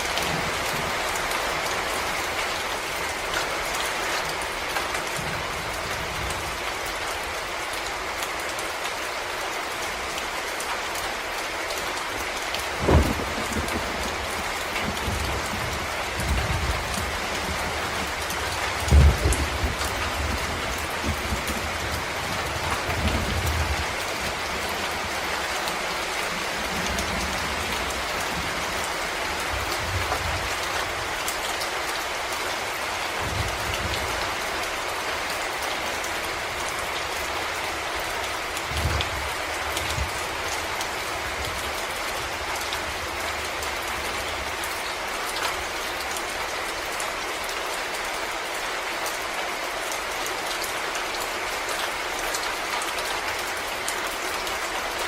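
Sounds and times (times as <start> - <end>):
rain pattering on leaves: 0.0 - 55.0
low rumbles: 12.8 - 25.0.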